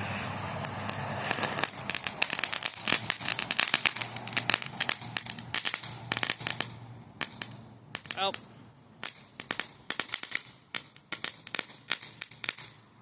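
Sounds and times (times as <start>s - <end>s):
brief hiss: 0.0s - 4.0s
fireworks crackling: 0.0s - 13.0s.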